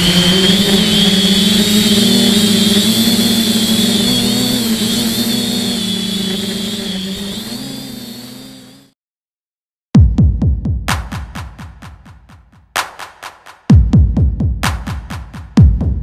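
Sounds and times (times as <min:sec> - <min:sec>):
quadcopter motors whining: 0:00.0 - 0:09.0.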